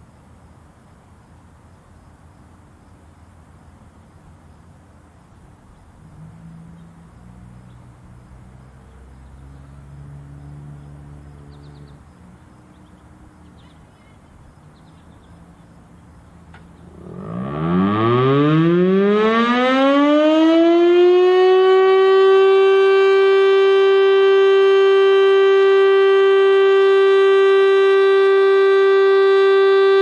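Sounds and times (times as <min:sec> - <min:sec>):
low steady hum: 0:00.0 - 0:20.1
tornado siren winding up: 0:16.9 - 0:30.0.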